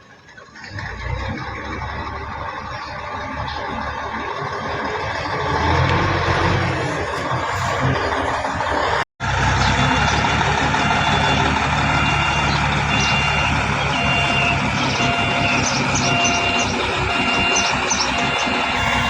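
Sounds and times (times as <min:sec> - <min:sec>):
diesel truck engine running: 0:00.0 - 0:19.0
reversing alarm beeping: 0:09.6 - 0:19.0.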